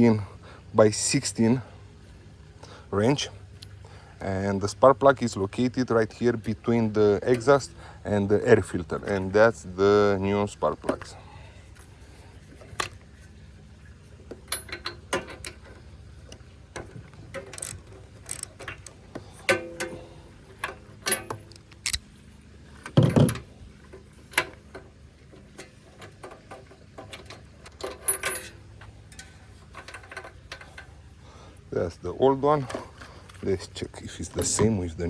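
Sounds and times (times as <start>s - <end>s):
socket wrench clicking on metal: 14.4s - 22.1s.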